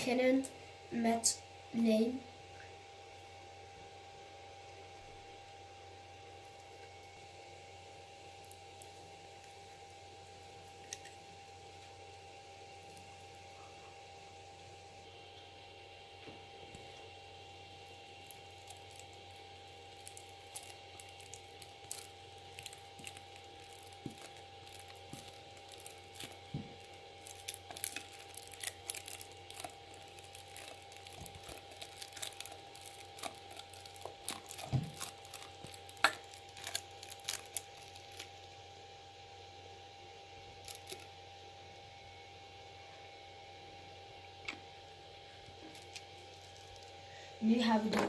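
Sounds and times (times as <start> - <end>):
faint steady hum: 0.0 - 48.0.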